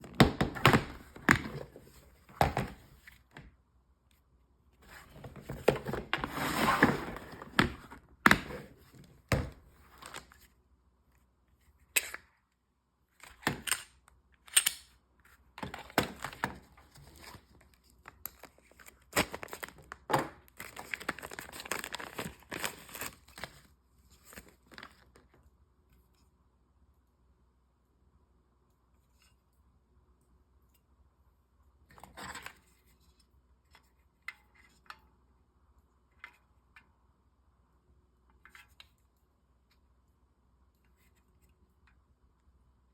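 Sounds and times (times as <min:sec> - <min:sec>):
clicks and knocks of objects handled: 0:13.2 - 0:15.0
packaging crinkling and tearing: 0:18.0 - 0:23.7.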